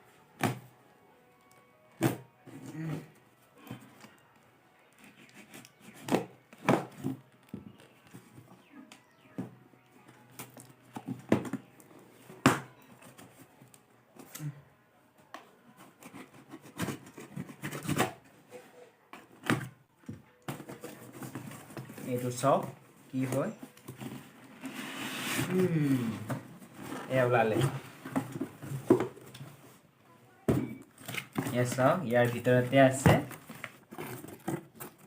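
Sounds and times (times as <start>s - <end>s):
packaging knocks and scrapes: 30.6s - 35.0s.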